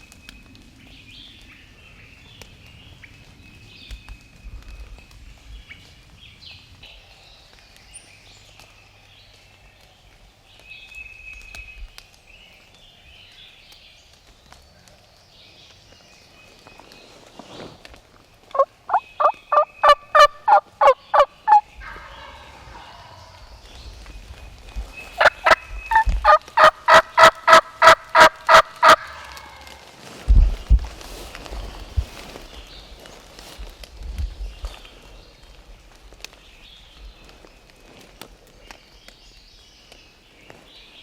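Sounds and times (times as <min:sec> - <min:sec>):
turkey calling: 0:18.5 - 0:23.3, 0:25.2 - 0:29.5
small birds chirping: 0:18.5 - 0:29.4.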